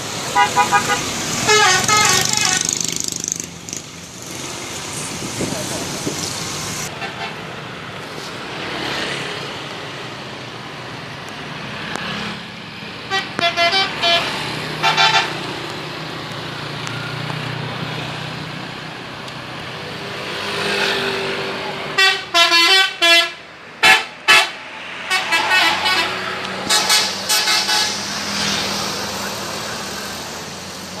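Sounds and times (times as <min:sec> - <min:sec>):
bus engine rumble: 0:00.0 - 0:20.3, 0:21.2 - 0:31.0
road traffic: 0:00.0 - 0:31.0
musical air horn toots: 0:00.4 - 0:02.8, 0:22.0 - 0:28.1.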